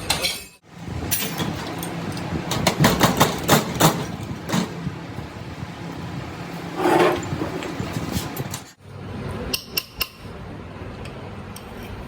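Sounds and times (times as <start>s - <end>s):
low machine rumble: 0.7s - 9.5s.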